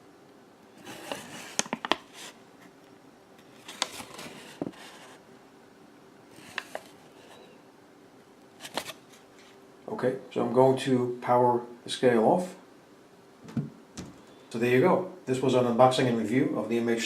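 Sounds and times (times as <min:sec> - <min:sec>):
rustles and scrapes: 0:00.8 - 0:02.8, 0:03.4 - 0:05.2, 0:06.3 - 0:07.6.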